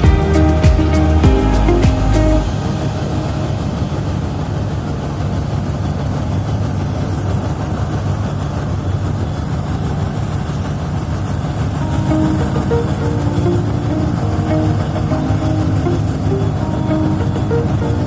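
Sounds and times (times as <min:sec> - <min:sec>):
steady low rumble: 0:00.0 - 0:06.6.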